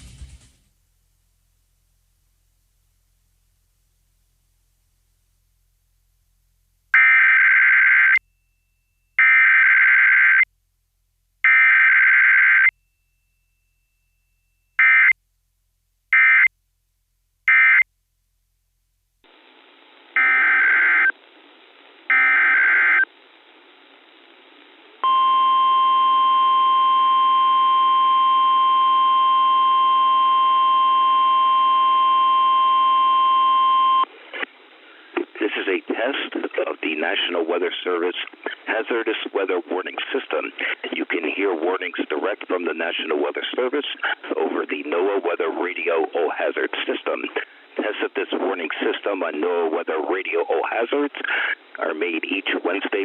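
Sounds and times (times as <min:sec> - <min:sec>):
radio hiss: 0:34.0 - 0:53.0.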